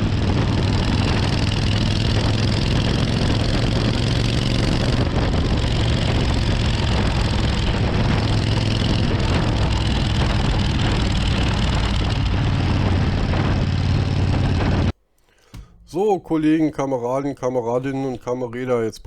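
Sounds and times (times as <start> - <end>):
motorcycle engine cruising: 0.0 - 14.9
wind and road noise: 0.0 - 15.0.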